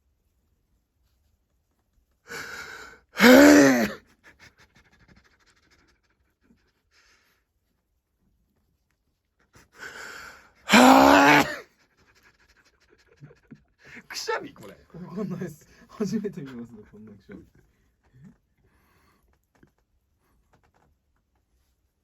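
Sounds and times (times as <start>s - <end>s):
gasping intake of breath: 2.3s - 4.0s, 9.8s - 11.6s
person sneezing: 2.3s - 4.0s, 10.7s - 11.6s.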